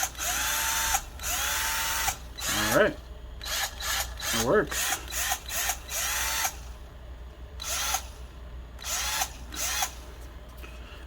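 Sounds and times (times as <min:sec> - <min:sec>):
cordless drill motor whirring: 0:00.0 - 0:02.8, 0:03.4 - 0:06.8, 0:07.6 - 0:08.2, 0:08.8 - 0:10.1.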